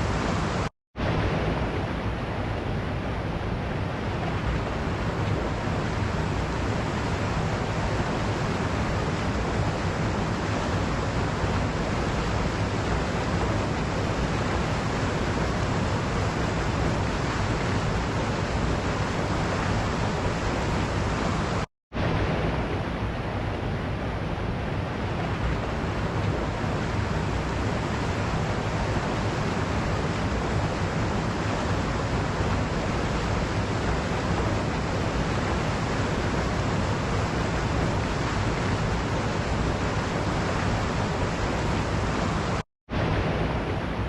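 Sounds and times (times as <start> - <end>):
waterfall rushing: 0.0 - 1.9, 25.4 - 44.0.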